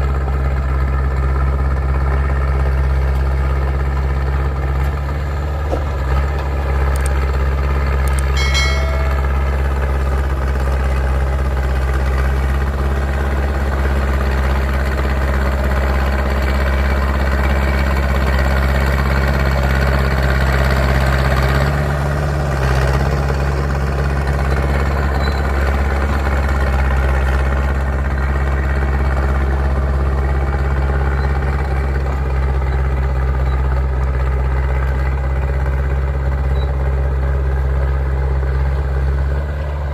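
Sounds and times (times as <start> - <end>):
bulldozer diesel engine running: 0.0 - 39.9
short metallic ring: 8.1 - 10.0.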